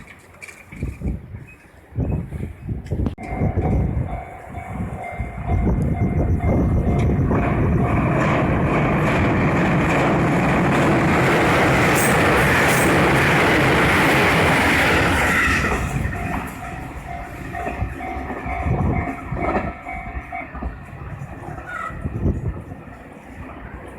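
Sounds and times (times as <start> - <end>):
train wheels clicking over rail joints: 2.8 - 21.8
crossing warning bell ringing: 3.2 - 22.0.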